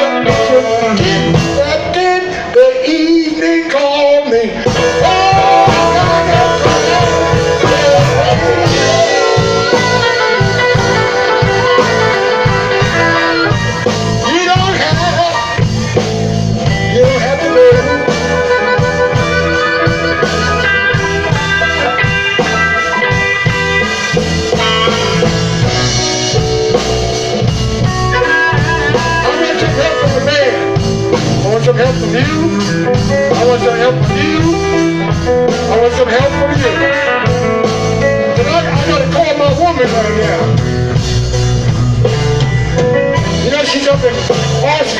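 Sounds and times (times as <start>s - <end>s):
drum kit: 0.0s - 44.9s
electric guitar: 0.0s - 44.9s
harmonica: 4.7s - 14.2s, 16.7s - 27.1s.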